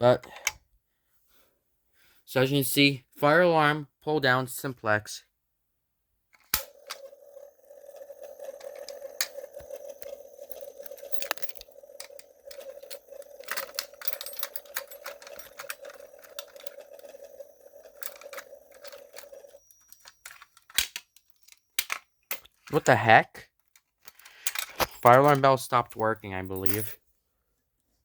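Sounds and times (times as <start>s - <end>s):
fire alarm bell ringing: 6.7s - 22.1s.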